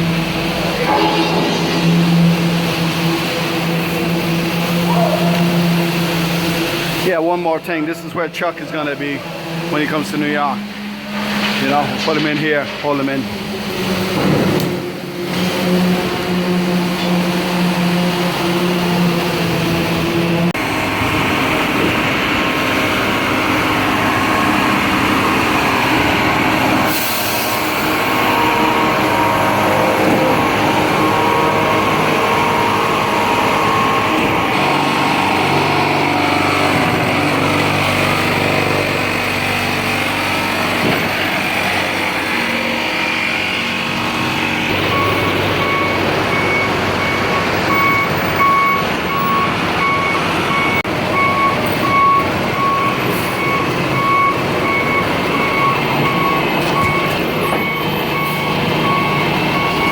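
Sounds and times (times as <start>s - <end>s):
diesel trucks running: 0.0s - 59.9s
backup alarm beeping: 4.8s - 5.8s, 44.8s - 59.9s.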